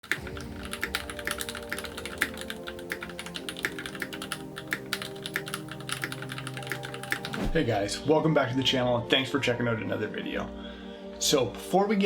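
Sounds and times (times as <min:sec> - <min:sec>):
fast mechanical keyboard typing: 0:00.0 - 0:07.4
background music: 0:00.0 - 0:12.0.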